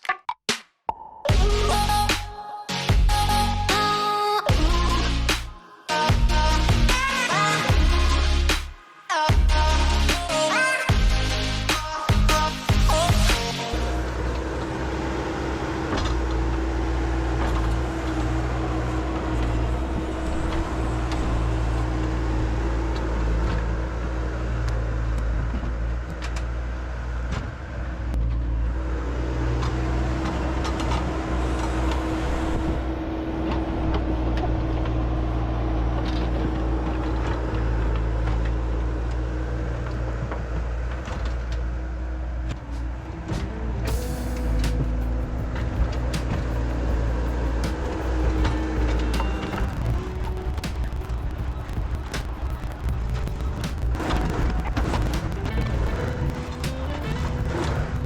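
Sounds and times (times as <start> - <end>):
constant tone: 42.4 - 58.0.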